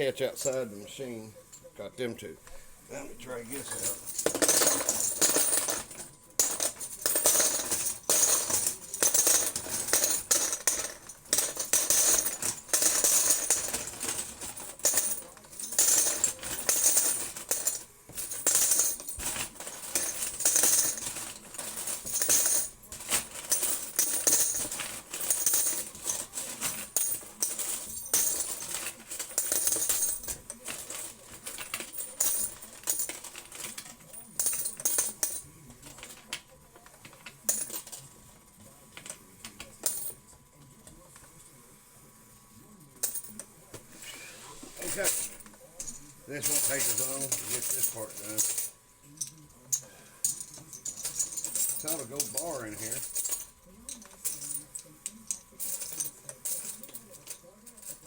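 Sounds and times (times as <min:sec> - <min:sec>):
coins clinking and jingling: 0:03.5 - 0:36.2, 0:37.1 - 0:38.1, 0:39.8 - 0:40.2, 0:43.0 - 0:43.4, 0:44.7 - 0:49.5, 0:50.2 - 0:58.0.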